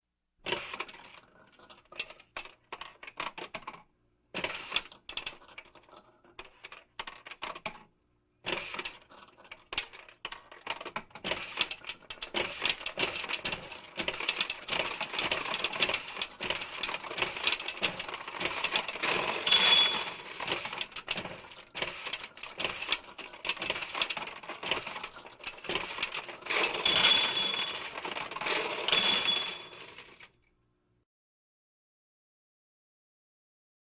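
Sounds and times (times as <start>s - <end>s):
steel balls rattling through pins: 8.7s - 30.3s.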